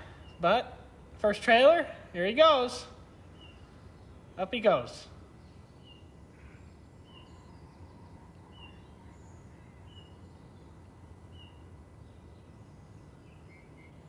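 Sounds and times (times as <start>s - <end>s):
faint outdoor background noise: 0.0s - 14.0s
bird chirping: 3.2s - 14.0s.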